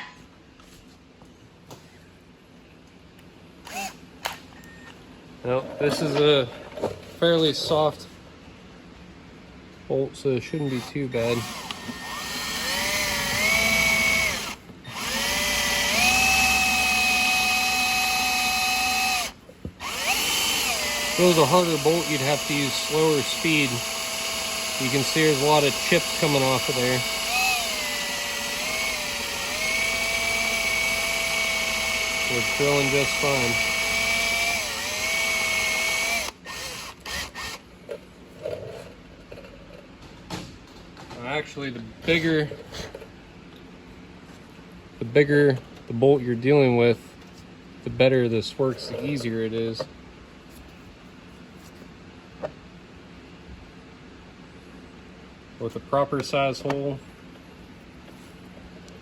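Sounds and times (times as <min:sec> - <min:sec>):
power drill whine: 0:03.6 - 0:04.0, 0:10.7 - 0:37.6.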